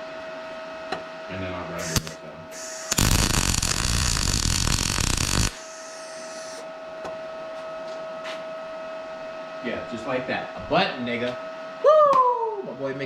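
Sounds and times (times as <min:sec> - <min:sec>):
faint steady whine: 0:01.7 - 0:06.6
welder arc crackling: 0:01.8 - 0:06.6.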